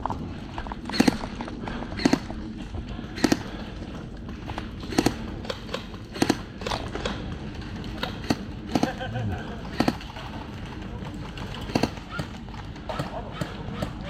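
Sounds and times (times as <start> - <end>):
airsoft gun firing: 0.9 - 2.4, 3.1 - 3.9, 4.5 - 7.2, 9.6 - 10.3, 11.5 - 14.0.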